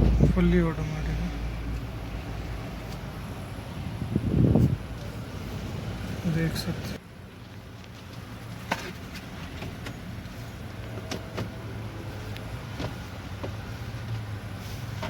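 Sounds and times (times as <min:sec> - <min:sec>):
engine idling: 0:00.0 - 0:06.9.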